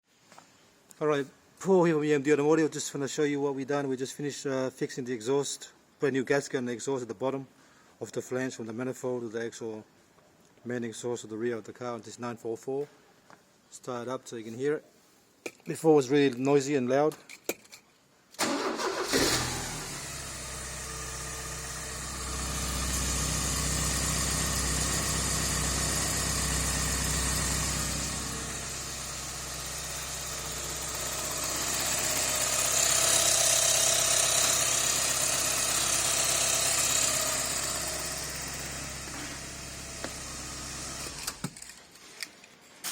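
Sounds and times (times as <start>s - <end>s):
car engine starting and idling: 18.4s - 41.6s.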